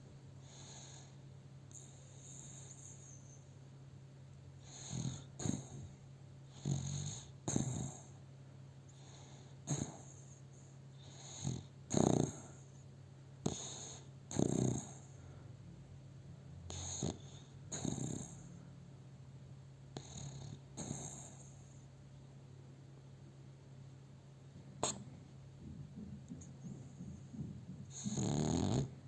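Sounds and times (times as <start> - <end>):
low steady hum: 0.0 - 6.6, 7.2 - 29.0
dog snoring: 0.4 - 3.4, 4.6 - 8.2, 8.9 - 12.8, 13.4 - 15.4, 16.6 - 18.8, 19.9 - 21.9, 24.8 - 25.2, 26.4 - 29.0.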